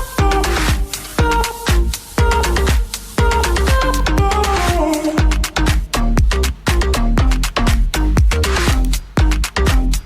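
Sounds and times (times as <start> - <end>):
deep bass: 0.0 - 10.0
electronic dance music: 0.0 - 10.0
thumping kick drum: 0.0 - 10.0.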